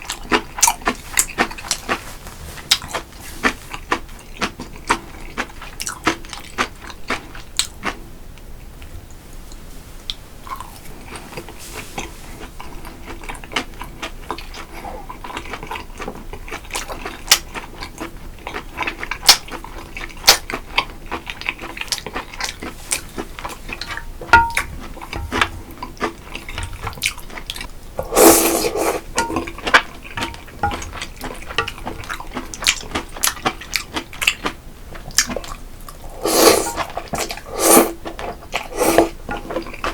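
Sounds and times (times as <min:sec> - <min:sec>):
utensils tapping a bowl: 0:23.9 - 0:25.5, 0:28.0 - 0:31.0
loud slurp: 0:28.0 - 0:29.5, 0:36.0 - 0:39.3.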